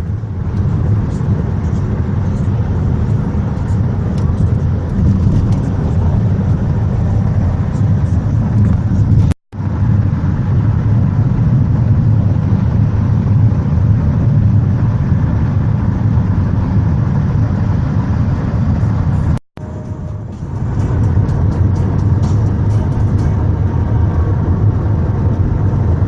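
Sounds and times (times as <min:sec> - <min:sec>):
car road and engine rumble: 0:00.0 - 0:26.0.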